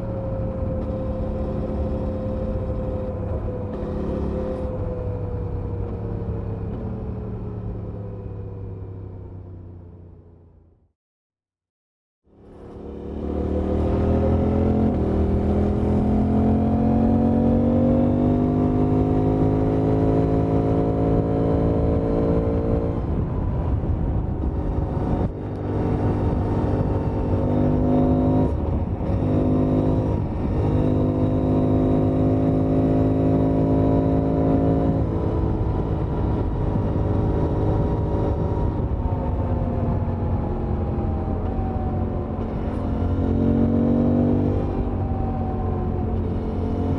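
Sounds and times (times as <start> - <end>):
motorcycle engine accelerating: 0.0 - 8.8, 12.3 - 46.9
wind noise: 13.6 - 46.9.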